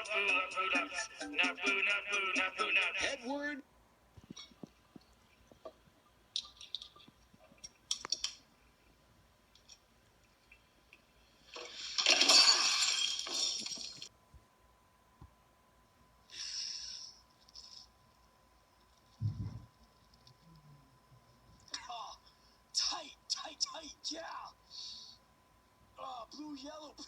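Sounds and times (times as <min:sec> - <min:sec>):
glass bottles clinking: 0:11.9 - 0:14.1.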